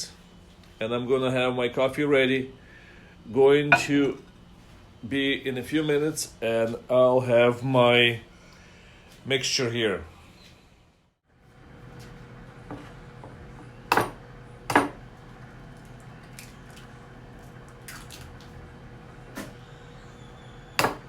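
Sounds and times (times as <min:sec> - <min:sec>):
microwave oven humming: 0:11.3 - 0:21.0
sharp knocks: 0:20.8 - 0:21.0.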